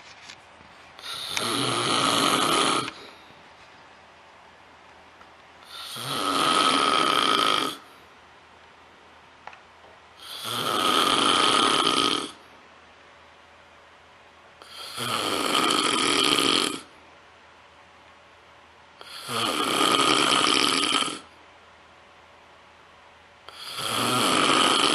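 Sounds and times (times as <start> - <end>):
person snoring with whistle: 1.0 - 3.0, 5.6 - 7.9, 10.2 - 12.4, 14.6 - 16.9, 19.0 - 21.3, 23.5 - 24.9.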